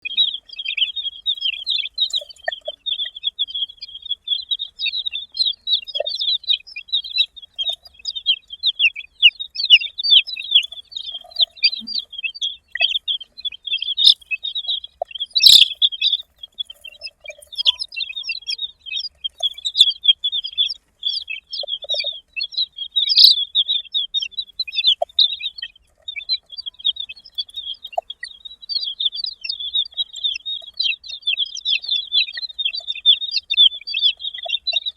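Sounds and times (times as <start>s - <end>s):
baby chicks peeping: 0.0s - 34.9s.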